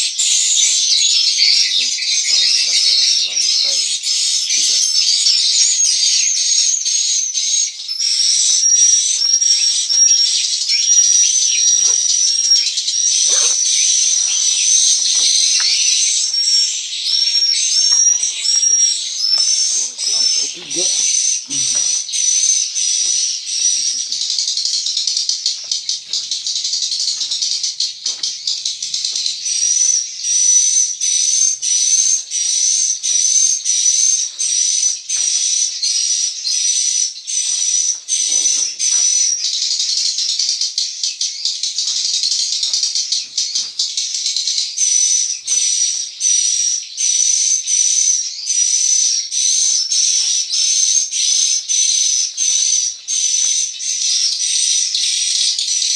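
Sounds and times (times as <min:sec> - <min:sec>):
swiftlets twittering: 0:09.9 - 0:22.0.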